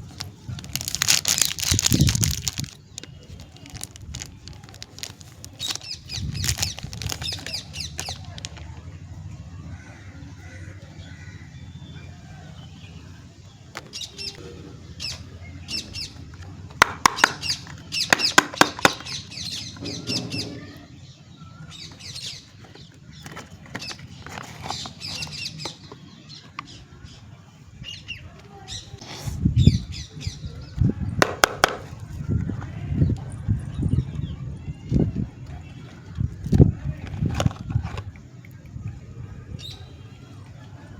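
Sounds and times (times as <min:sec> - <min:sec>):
wrapper crinkling: 0:00.0 - 0:08.7.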